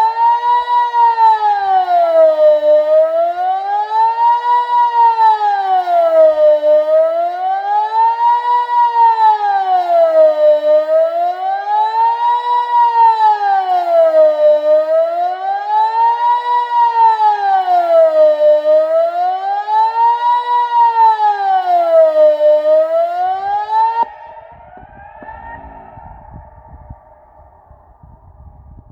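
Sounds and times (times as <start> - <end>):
rising and falling siren: 0.0 - 28.9.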